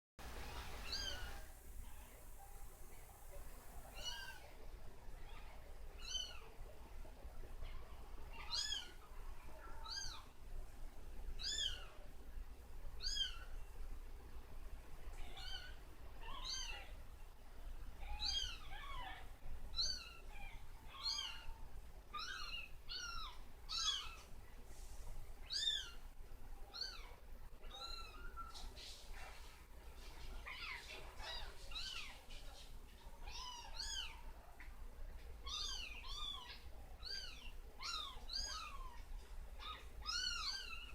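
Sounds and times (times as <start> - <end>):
kittens mewing: 0.8 - 1.4.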